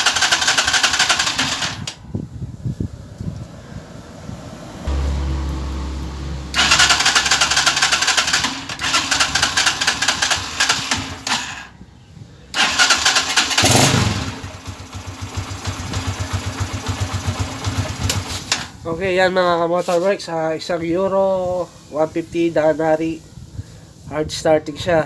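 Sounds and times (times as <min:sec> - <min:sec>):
motorcycle electric starter cranking: 0:00.0 - 0:02.0, 0:06.5 - 0:11.8, 0:12.5 - 0:18.8
motorcycle engine running: 0:00.0 - 0:02.0, 0:04.8 - 0:11.8, 0:12.6 - 0:18.8.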